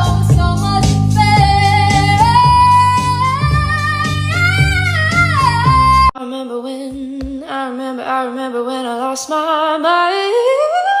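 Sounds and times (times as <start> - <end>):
song: 0.4 - 6.1.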